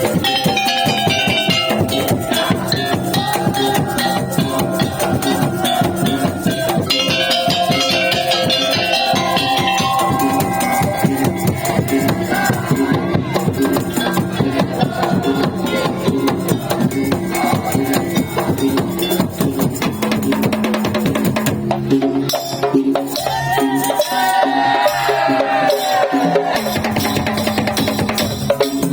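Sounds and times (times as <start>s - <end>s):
sustained melodic line: 0.0s - 4.5s, 6.4s - 11.6s
fast drumming: 0.0s - 28.9s
wooden percussion: 0.0s - 28.9s.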